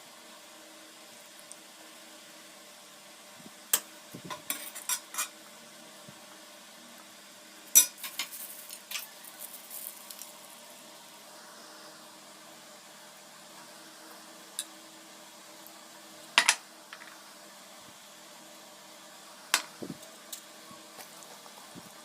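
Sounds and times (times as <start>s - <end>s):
faint kitchen background: 0.0s - 22.0s
metal utensil scraping cookware: 4.4s - 5.3s.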